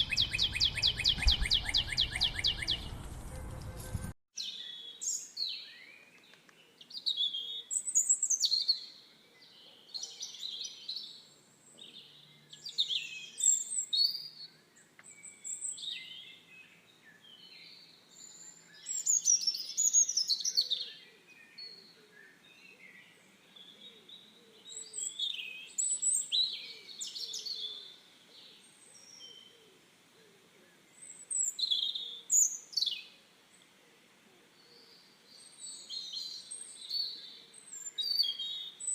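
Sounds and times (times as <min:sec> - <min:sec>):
birds chirping and whistling: 0:00.0 - 0:04.0, 0:34.8 - 0:38.9.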